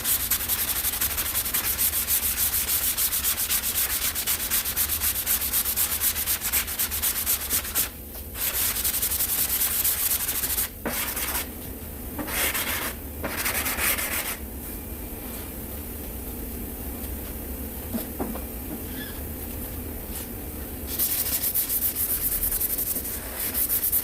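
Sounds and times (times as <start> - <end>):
sandpaper rubbing on filler: 0.0 - 11.5, 12.2 - 14.4, 20.9 - 24.0.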